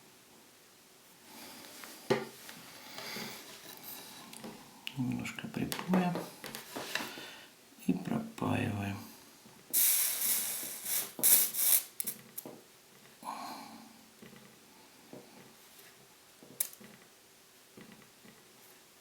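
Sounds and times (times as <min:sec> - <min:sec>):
faint clicks and taps: 0:01.7 - 0:07.3, 0:12.1 - 0:13.2, 0:14.2 - 0:17.1, 0:17.8 - 0:18.5
soldering iron sizzling: 0:09.7 - 0:12.6.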